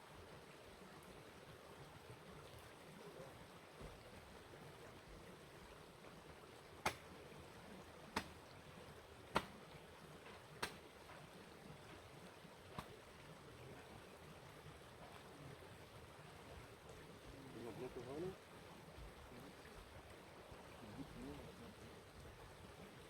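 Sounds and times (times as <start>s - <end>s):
faint steady hiss: 0.0s - 23.0s.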